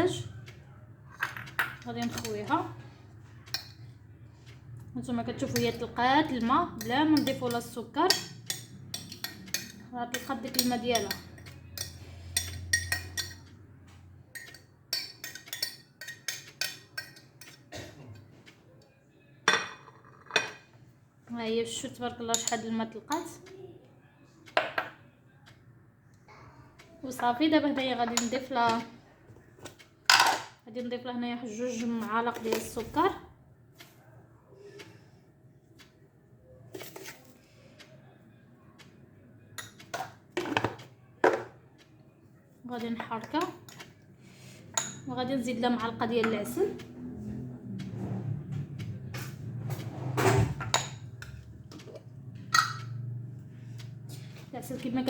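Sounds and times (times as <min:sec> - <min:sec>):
metal spoon tapping glass jar: 0:06.7 - 0:13.4, 0:50.7 - 0:53.0
clinks against a glass jar: 0:52.5 - 0:53.0.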